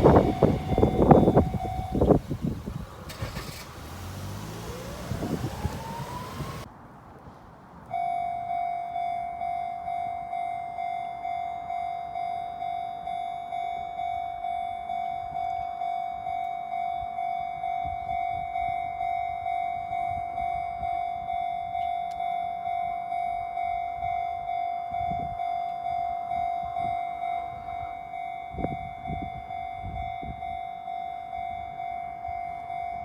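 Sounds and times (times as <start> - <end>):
train whine rising in pitch: 0.0 - 2.4, 3.1 - 6.7
level-crossing warning bell: 0.0 - 2.5, 7.9 - 33.0.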